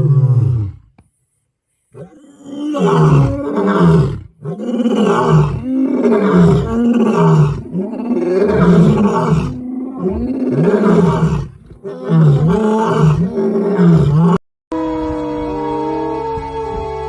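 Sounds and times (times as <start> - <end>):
large wild animal calling: 2.0 - 14.4.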